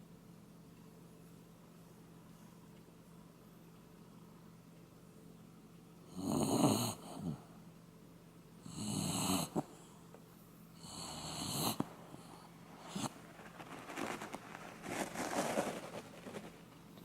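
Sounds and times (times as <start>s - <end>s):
dog snoring: 6.1s - 7.5s, 8.6s - 9.9s, 10.8s - 13.2s.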